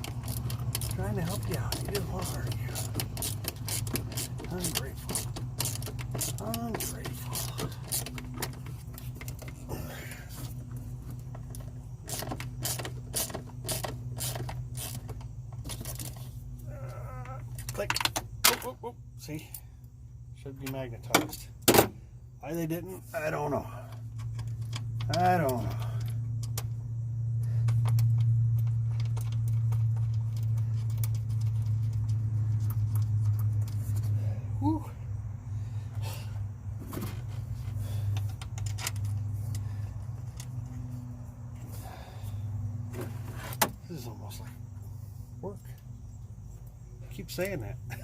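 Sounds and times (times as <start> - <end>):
hand tools tapping on metal: 0.0 - 9.6
tools and fasteners clinking: 0.0 - 18.8, 36.8 - 41.0
steady low hum: 0.0 - 48.0.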